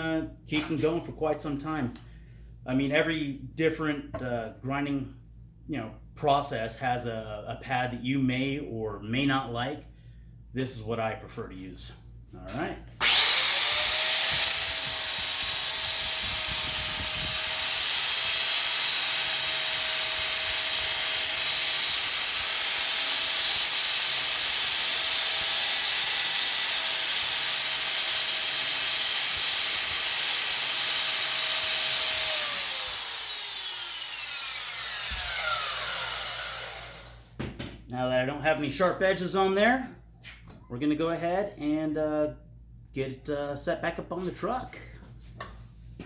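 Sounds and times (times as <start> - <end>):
angle grinder grinding metal: 13.0 - 37.4
grinder winding down: 13.0 - 37.4.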